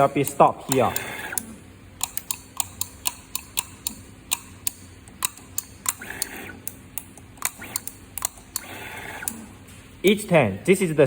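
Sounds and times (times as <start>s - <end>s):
soldering machine clicking: 0.0s - 10.3s
faint steady machine hum: 0.0s - 11.0s.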